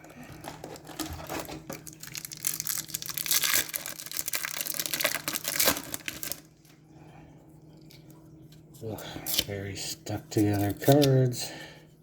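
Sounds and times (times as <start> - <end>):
wrapper tearing and crinkling: 0.0 - 6.5.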